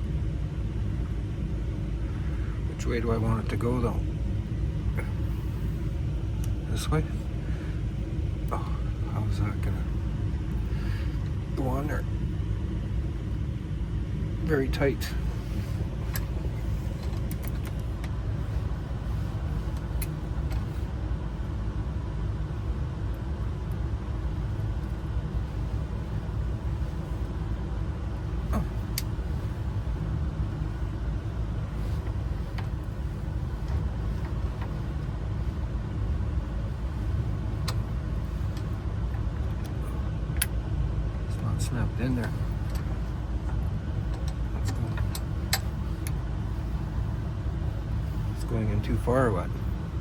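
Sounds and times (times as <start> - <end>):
vehicle engine rumbling: 0.0 - 50.0.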